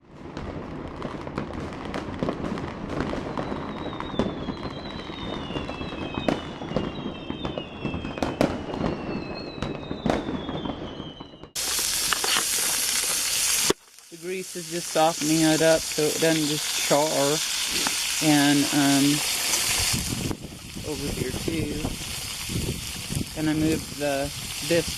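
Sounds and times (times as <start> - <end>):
campfire crackling and popping: 0.0 - 24.9
high whistles sliding down: 3.4 - 13.5
food sizzling in frying: 11.6 - 24.9.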